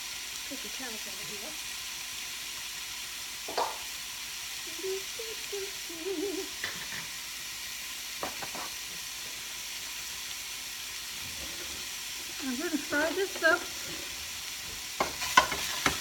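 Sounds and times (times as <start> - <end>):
meat sizzling in a frying pan: 0.0 - 16.0
utensil knocking on pan: 3.5 - 3.8, 15.0 - 16.0.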